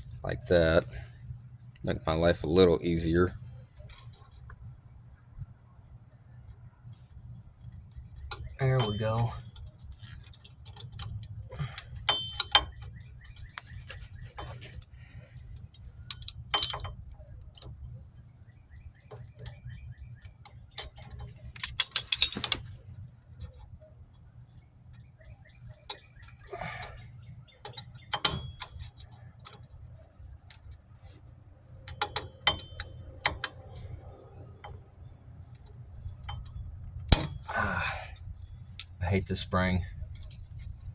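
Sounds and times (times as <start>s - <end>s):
steady low hum: 0.0s - 40.9s
metal parts and tools clinking: 8.6s - 13.5s, 16.1s - 17.0s, 20.8s - 22.7s.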